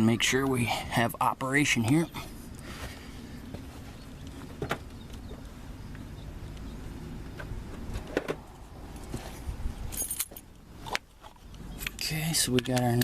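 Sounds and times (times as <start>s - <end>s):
keys jingling: 9.8s - 10.5s
keys clicking against truck door: 9.8s - 13.0s.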